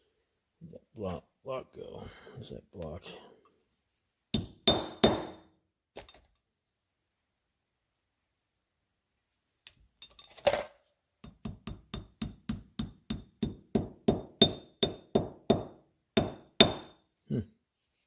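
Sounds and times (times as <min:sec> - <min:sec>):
small hammer tapping on metal: 0:04.4 - 0:05.4, 0:11.2 - 0:17.0.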